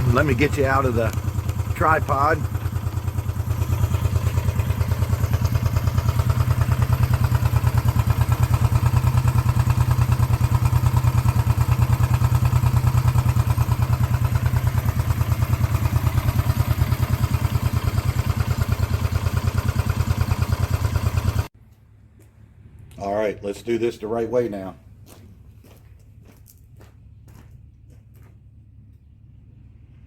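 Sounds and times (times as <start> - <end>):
motorcycle engine idling: 0.0 - 21.5.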